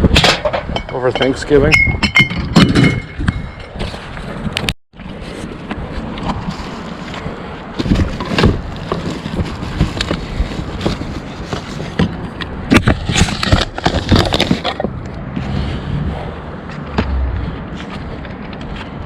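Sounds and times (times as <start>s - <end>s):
steady outdoor rumble: 0.0s - 19.0s
rummaging through recycling clatter: 6.2s - 14.9s.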